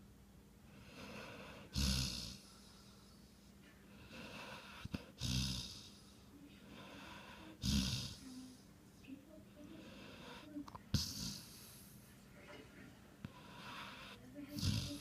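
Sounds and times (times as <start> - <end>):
quiet breathing: 0.6 - 15.0
loud snoring: 0.9 - 2.4, 4.1 - 5.9, 7.6 - 8.2, 13.5 - 15.0.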